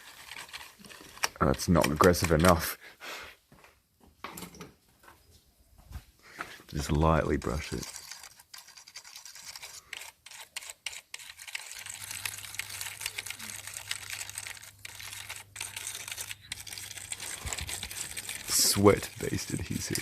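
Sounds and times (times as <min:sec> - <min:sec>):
brush scrubbing keyboard: 0:00.0 - 0:02.6, 0:06.8 - 0:20.0.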